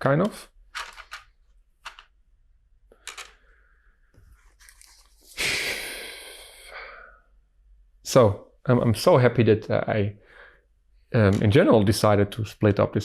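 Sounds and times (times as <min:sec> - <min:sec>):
plastic pieces clicking: 0:00.2 - 0:02.1, 0:02.9 - 0:03.4.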